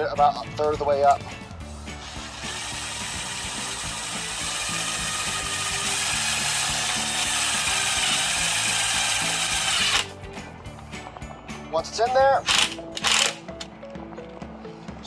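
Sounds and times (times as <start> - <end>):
power driver driving a screw: 2.0 - 10.1, 12.4 - 13.7.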